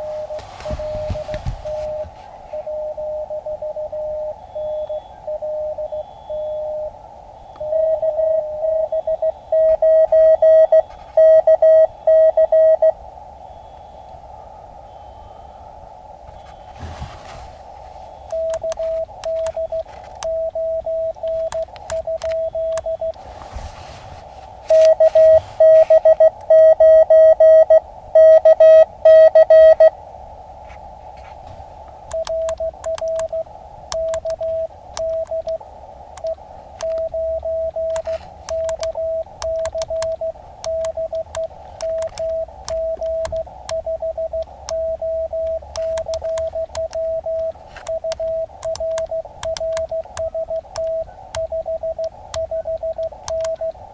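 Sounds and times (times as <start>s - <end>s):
morse code beeping tone: 0.0s - 14.1s, 18.1s - 23.2s, 24.6s - 29.9s, 32.1s - 35.6s, 36.2s - 53.8s
receiver hiss: 0.0s - 53.9s
harsh loud morse code: 18.1s - 23.2s, 24.7s - 29.9s, 32.1s - 35.6s, 36.2s - 53.8s.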